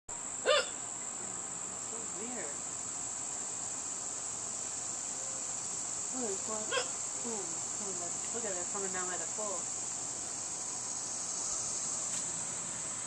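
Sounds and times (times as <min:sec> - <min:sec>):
high-pitched insect trill: 0:00.1 - 0:13.0
sharp hiccup: 0:00.4 - 0:00.8.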